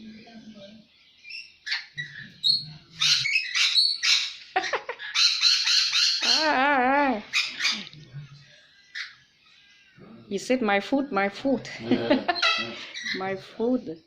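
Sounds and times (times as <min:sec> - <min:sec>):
cockatoos squawking: 0:01.3 - 0:08.0, 0:12.1 - 0:13.4.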